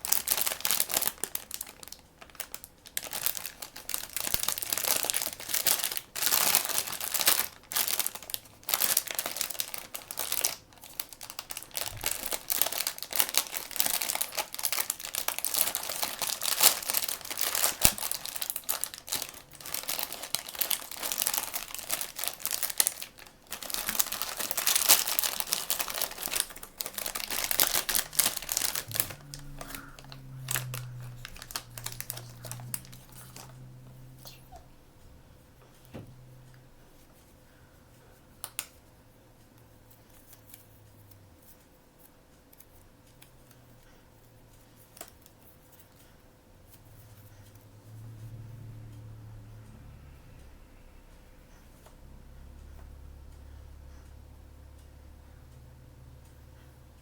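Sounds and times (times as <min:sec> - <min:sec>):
plastic packaging crinkling and tearing: 0:00.0 - 0:34.6.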